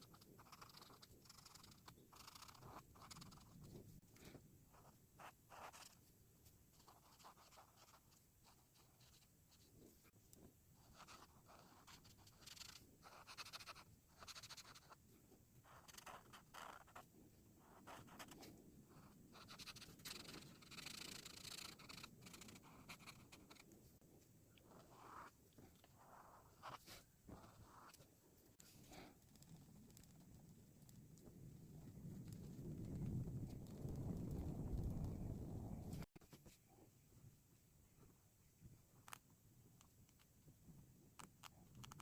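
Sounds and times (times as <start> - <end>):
coloring strokes scratching paper: 0.0 - 6.1, 6.7 - 10.2, 10.8 - 15.0, 15.6 - 23.7, 24.6 - 29.1.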